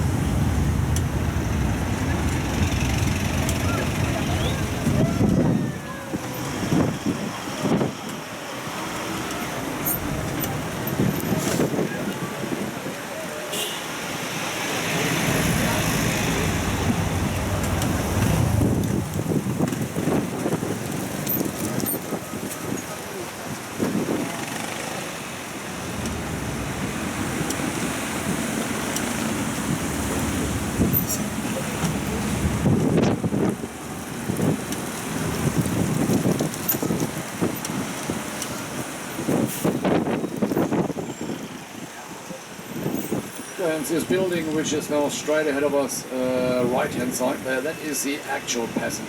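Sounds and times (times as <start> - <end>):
wind on microphone: 0.0 - 8.1, 8.9 - 13.1, 14.6 - 24.4, 25.2 - 41.6
vehicle and road noise: 0.0 - 49.0.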